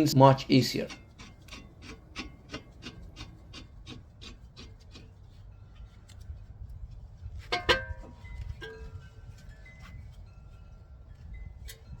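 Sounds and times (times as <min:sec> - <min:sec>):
metal on metal clank: 0:07.5 - 0:08.2.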